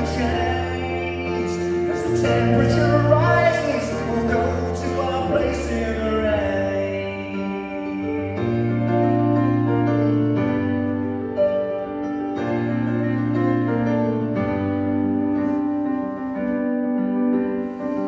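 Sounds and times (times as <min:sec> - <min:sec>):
solo piano chords and melody: 0:00.0 - 0:18.0.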